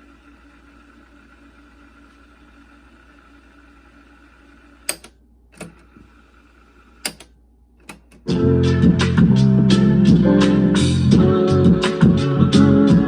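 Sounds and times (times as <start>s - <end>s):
cassette tape winding whir: 0.0s - 8.4s
transport keys clicking: 4.9s - 5.8s, 7.0s - 8.3s
music from tape: 8.2s - 13.0s.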